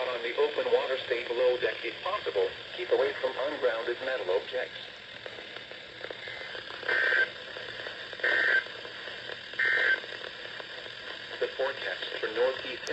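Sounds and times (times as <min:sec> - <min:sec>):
radio hiss: 0:00.0 - 0:12.9
short buzzing data bursts: 0:06.9 - 0:07.4, 0:08.2 - 0:08.7, 0:09.6 - 0:10.1.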